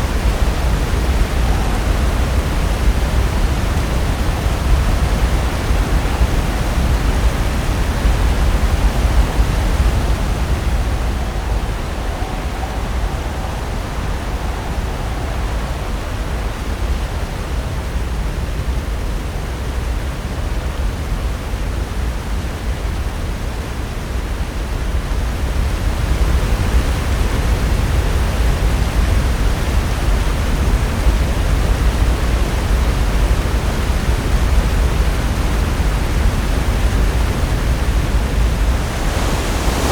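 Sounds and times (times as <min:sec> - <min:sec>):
waves breaking on shore: 0:00.0 - 0:18.0, 0:36.9 - 0:39.9.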